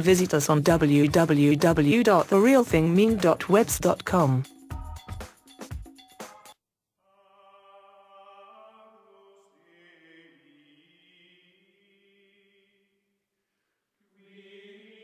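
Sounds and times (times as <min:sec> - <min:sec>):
choir-like chanting music: 0:07.1 - 0:12.7, 0:14.2 - 0:15.0.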